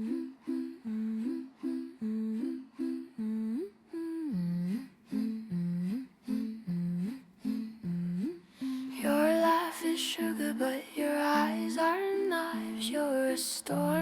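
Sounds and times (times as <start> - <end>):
hummed melody: 0.0 - 14.0.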